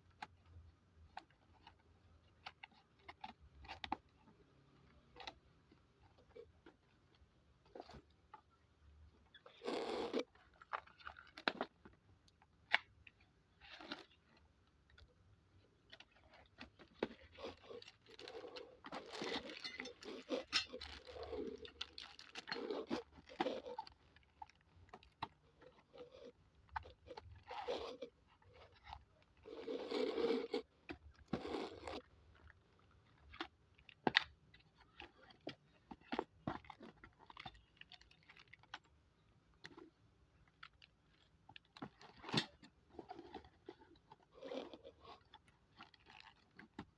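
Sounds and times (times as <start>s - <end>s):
packaging crinkling and scraping: 15.8s - 34.0s, 40.8s - 46.9s.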